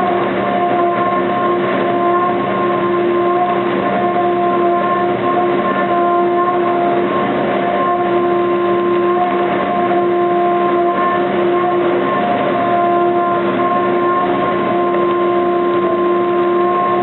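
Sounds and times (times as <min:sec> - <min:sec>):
milling machine cutting metal: 0:00.0 - 0:17.0.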